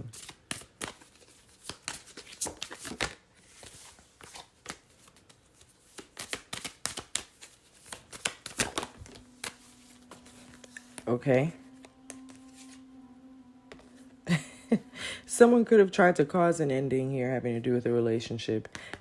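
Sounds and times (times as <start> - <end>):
cards being shuffled: 0.0 - 11.0.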